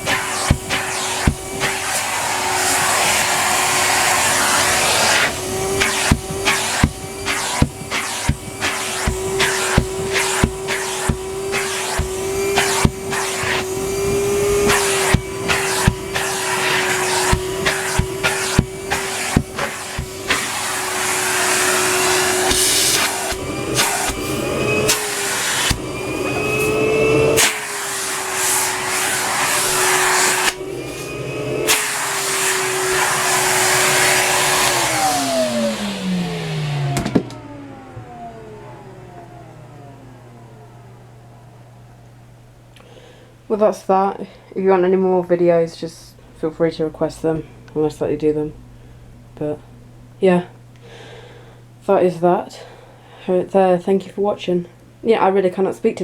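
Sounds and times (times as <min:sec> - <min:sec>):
vacuum motor winding down: 0:00.0 - 0:42.7
vacuum cleaner motor hum: 0:00.0 - 0:43.5.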